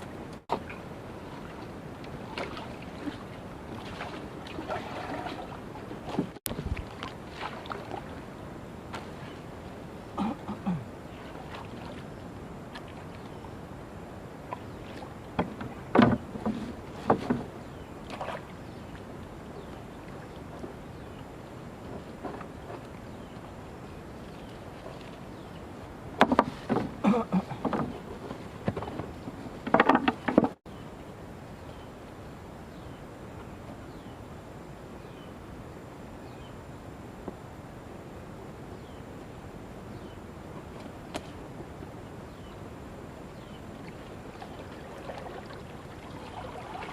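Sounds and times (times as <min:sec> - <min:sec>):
water splashes and boat knocks: 0:00.0 - 0:08.3, 0:08.9 - 0:09.5, 0:10.2 - 0:13.4, 0:14.4 - 0:20.9, 0:21.8 - 0:23.6, 0:24.3 - 0:30.6, 0:43.7 - 0:46.9
steady background hiss: 0:07.0 - 0:46.9.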